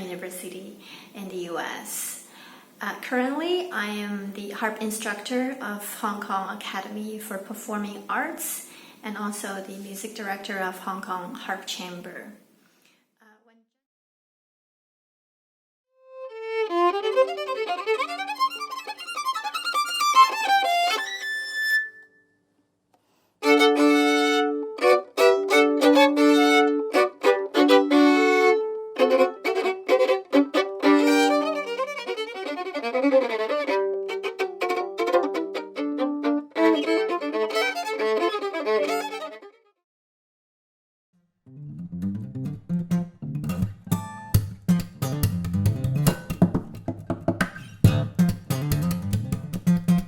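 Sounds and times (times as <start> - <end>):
solo violin playing: 16.0 - 22.2, 23.4 - 39.8.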